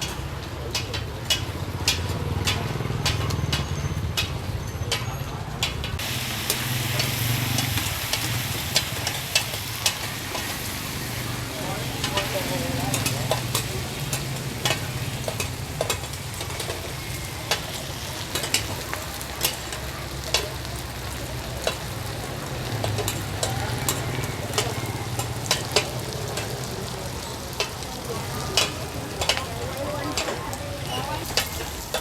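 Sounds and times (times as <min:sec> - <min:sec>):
food sizzling in hot oil: 0:06.0 - 0:32.0
metal spatula clanking on pan: 0:12.0 - 0:20.5, 0:22.7 - 0:27.9, 0:28.5 - 0:32.0.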